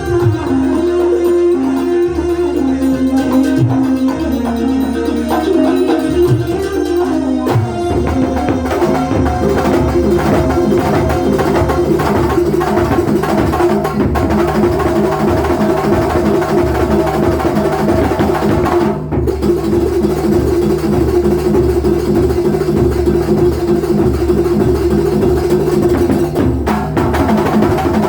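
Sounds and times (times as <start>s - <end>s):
sustained melodic tones: 0.0s - 14.1s
hand drums beat: 0.0s - 28.0s.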